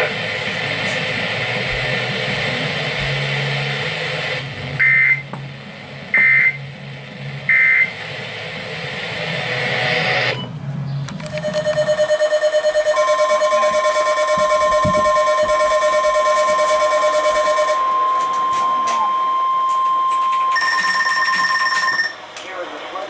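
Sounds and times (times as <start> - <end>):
radio static: 0.0 - 5.3, 11.2 - 21.4
low hum: 0.0 - 21.2
digital data tone bursts: 4.8 - 5.3, 6.2 - 6.6, 7.5 - 8.0, 11.2 - 22.2.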